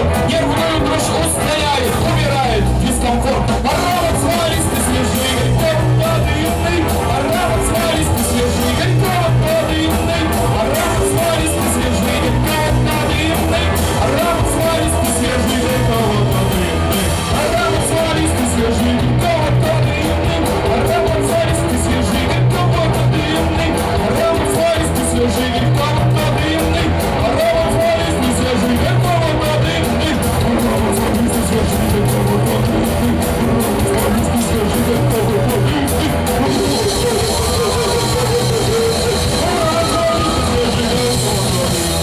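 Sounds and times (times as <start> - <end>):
bass guitar: 0.0 - 42.0
drums: 0.0 - 42.0
electric guitar: 0.0 - 42.0
person singing: 0.0 - 42.0.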